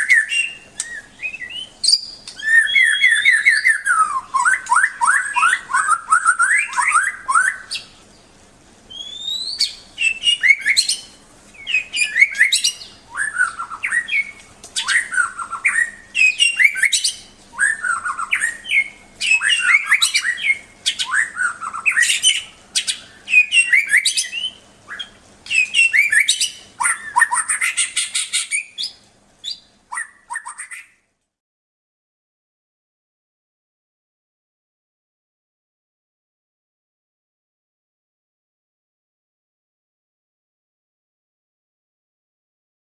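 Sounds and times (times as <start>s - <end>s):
songbird whistling and chattering: 0.0s - 7.9s, 8.9s - 31.0s.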